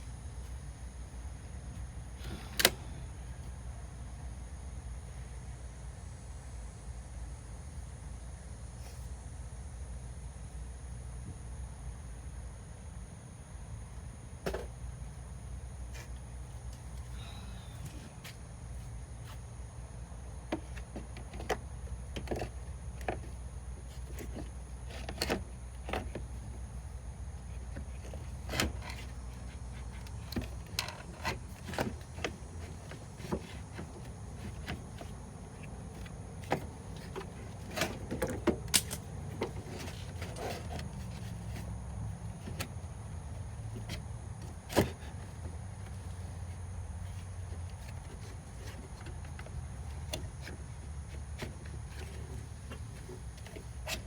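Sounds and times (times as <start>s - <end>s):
steady low hum: 0.0s - 54.0s
tools and parts clicking and knocking: 37.2s - 40.8s.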